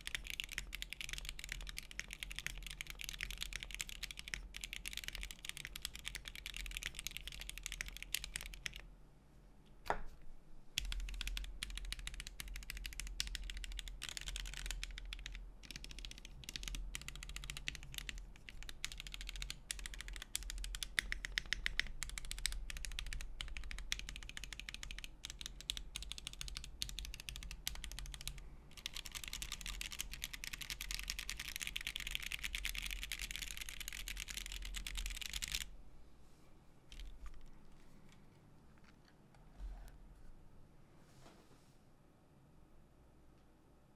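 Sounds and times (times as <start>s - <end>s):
mechanical keyboard typing: 0.0s - 8.8s, 10.8s - 35.7s, 36.9s - 37.5s.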